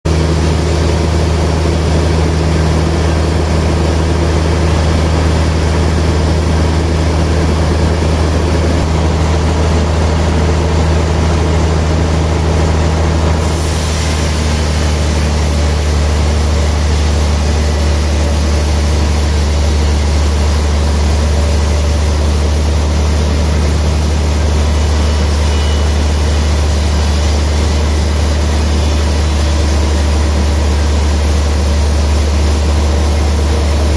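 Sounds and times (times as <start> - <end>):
sawmill machinery drone: 0.1 - 33.9
higher hiss: 13.4 - 33.9.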